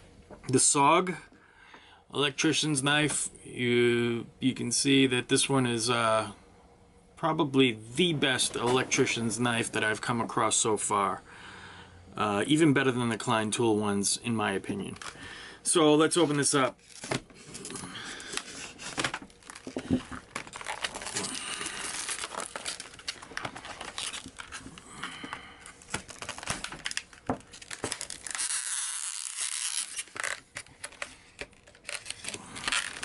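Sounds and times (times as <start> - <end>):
packaging crinkling: 14.8 - 15.3, 16.8 - 33.0.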